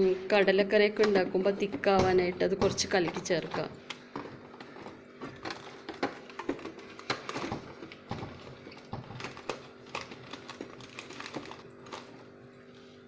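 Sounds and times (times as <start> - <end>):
faint hum: 0.0 - 13.0
container lids clicking and knocking: 0.9 - 10.7.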